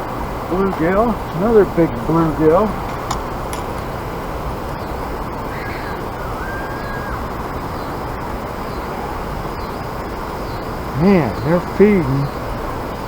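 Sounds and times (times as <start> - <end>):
faint bird call: 4.8 - 8.0, 8.7 - 12.6.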